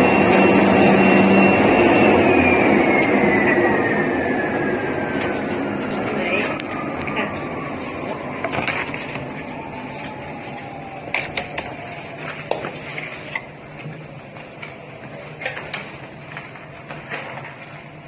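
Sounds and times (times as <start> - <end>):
cutting machine hum: 0.0 - 11.2
faint whine falling in pitch: 0.0 - 15.1.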